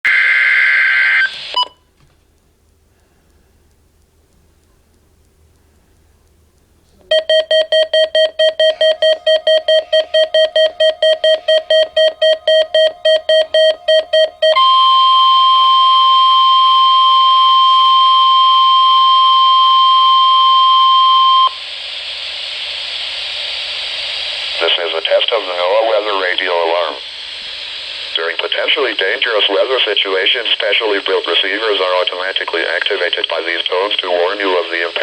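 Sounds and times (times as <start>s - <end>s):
radio hiss: 0.1s - 1.6s, 21.5s - 35.0s
steady loud warning tone: 7.0s - 21.7s
weather radio alarm beeping: 7.1s - 21.6s.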